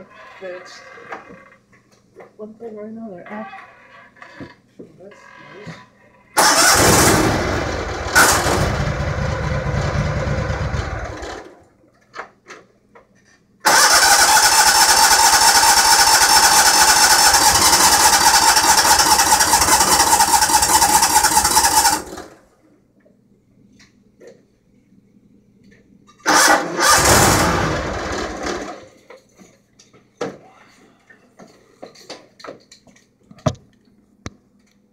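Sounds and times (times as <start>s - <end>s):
engine cranking with electric starter: 6.4s - 11.6s, 13.6s - 22.4s, 26.2s - 28.9s.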